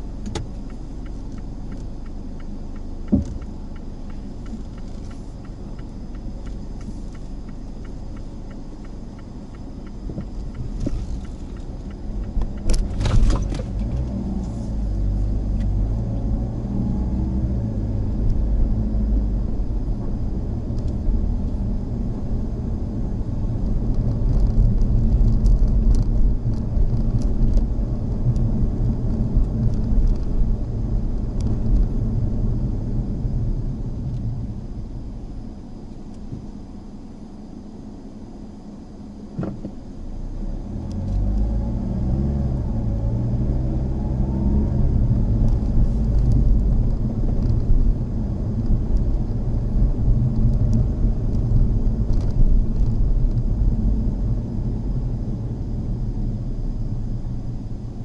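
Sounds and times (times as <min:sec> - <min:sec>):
low rumble of engine and tyres: 0:00.0 - 0:58.0.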